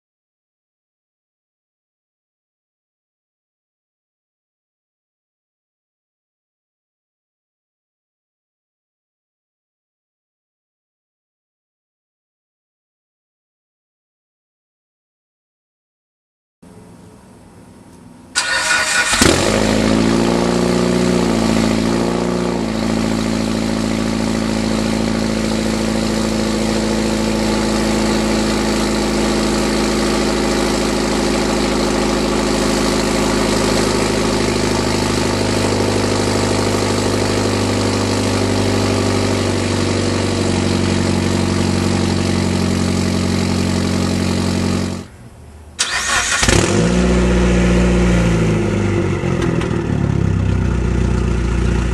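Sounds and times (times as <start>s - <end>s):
car engine idling loudly: 19.1s - 45.1s, 47.4s - 51.9s.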